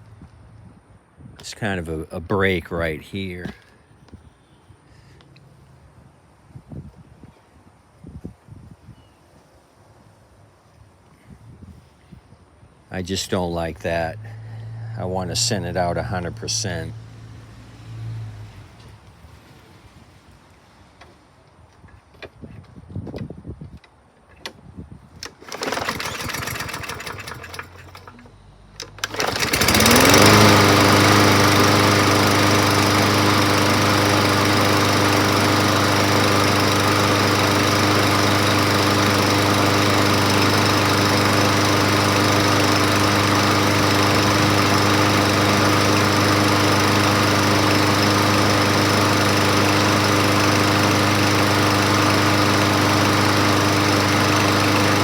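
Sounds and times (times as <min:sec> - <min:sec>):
lawn mower engine running: 0:13.2 - 0:16.9, 0:25.2 - 0:55.0
recoil starter rattling: 0:25.2 - 0:55.0.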